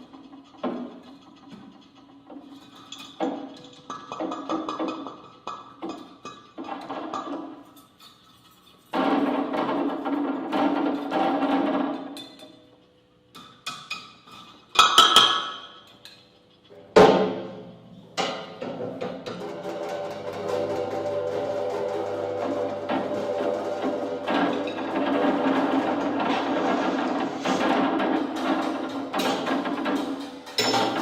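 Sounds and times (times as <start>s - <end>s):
struck wooden percussion: 18.2s - 31.0s
loud ringing strike: 19.4s - 30.0s.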